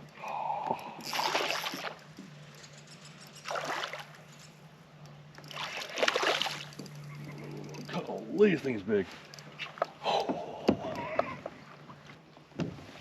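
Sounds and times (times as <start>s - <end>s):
fish splashing at water surface: 1.0s - 2.0s, 5.5s - 6.8s.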